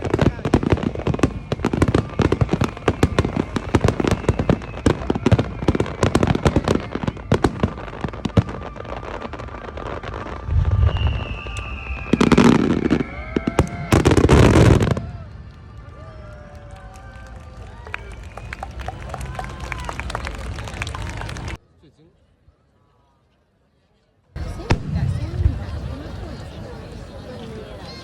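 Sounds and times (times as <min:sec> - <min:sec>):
fireworks bangs and crackles: 0:00.0 - 0:21.6, 0:24.4 - 0:28.0
high falling whistle: 0:10.2 - 0:14.8.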